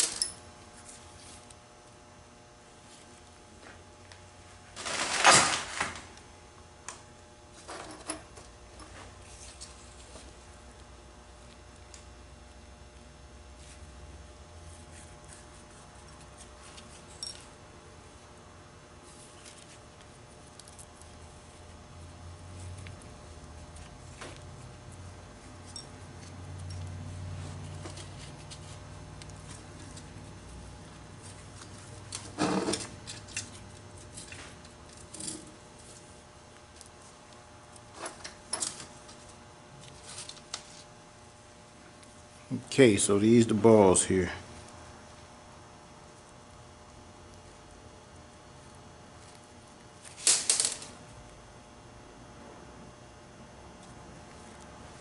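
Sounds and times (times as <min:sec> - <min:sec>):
metal parts clicking and tapping: 0:50.2 - 0:50.9.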